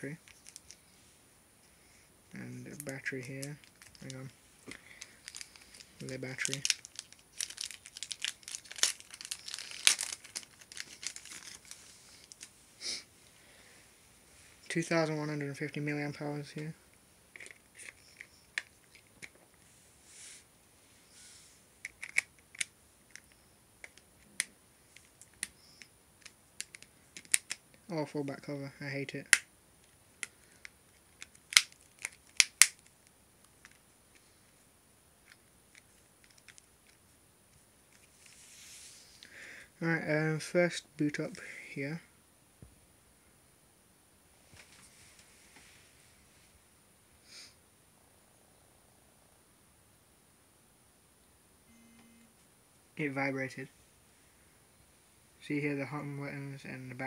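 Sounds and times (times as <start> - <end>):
soft rustle: 0.0 - 15.6, 32.8 - 39.2, 44.3 - 46.7
plastic wrapping crinkling: 0.2 - 0.8, 2.7 - 12.6, 31.0 - 33.0.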